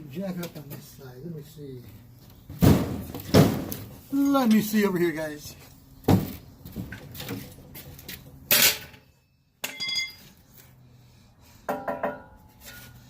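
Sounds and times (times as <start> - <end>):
short metallic ring: 9.6 - 10.4.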